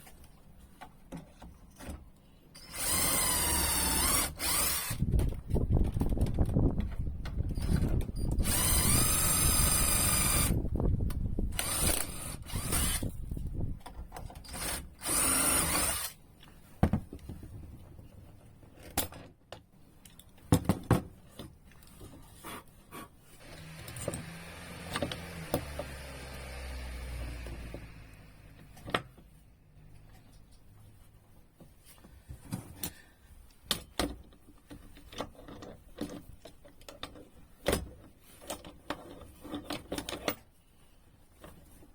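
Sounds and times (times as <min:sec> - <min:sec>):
power drill whining: 0:02.6 - 0:05.0, 0:07.6 - 0:10.6, 0:11.5 - 0:13.1, 0:14.5 - 0:16.2, 0:23.4 - 0:28.7.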